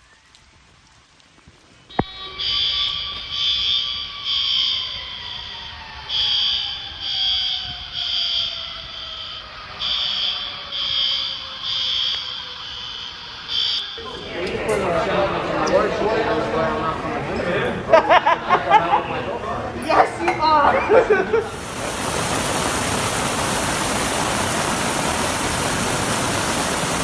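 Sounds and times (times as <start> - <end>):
fire alarm beeps: 1.9 - 14.1, 21.5 - 27.0.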